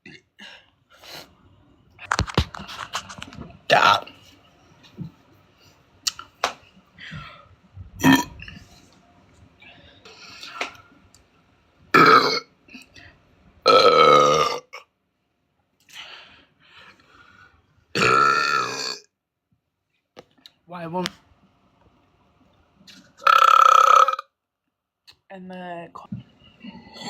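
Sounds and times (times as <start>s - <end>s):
woman burping loudly: 8.0s - 8.6s, 12.0s - 12.5s, 13.7s - 14.8s, 18.0s - 19.1s, 23.2s - 24.3s.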